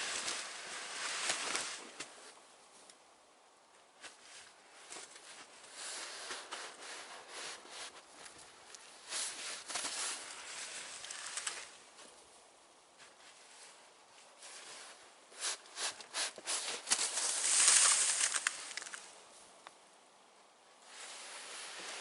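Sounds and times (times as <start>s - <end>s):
shovel scraping through snow: 14.4s - 18.7s, 20.9s - 22.0s.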